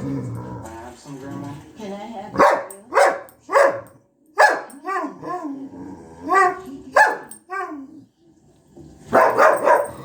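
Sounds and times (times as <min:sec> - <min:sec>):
dog barking: 0:02.4 - 0:05.2, 0:06.3 - 0:07.8, 0:09.1 - 0:10.0.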